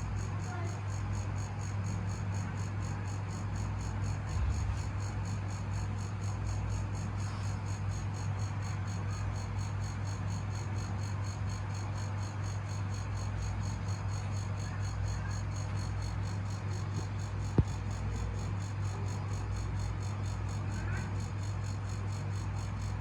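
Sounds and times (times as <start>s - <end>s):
air conditioner compressor humming: 0.0s - 23.0s.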